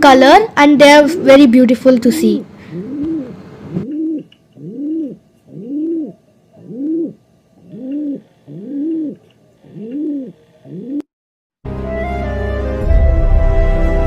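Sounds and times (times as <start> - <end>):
pigeon cooing: 2.6 - 11.0.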